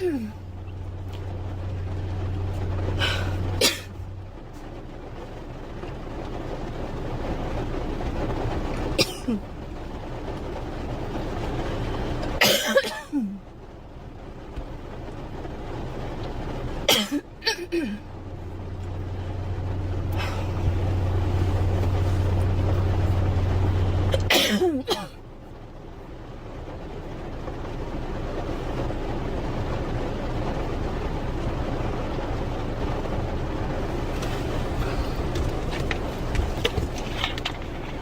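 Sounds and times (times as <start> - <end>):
steady background noise: 0.0 - 38.0
steady low hum: 0.0 - 38.0
girl coughing: 3.1 - 4.0, 9.0 - 9.4, 12.4 - 13.4, 16.9 - 18.0, 24.1 - 25.2.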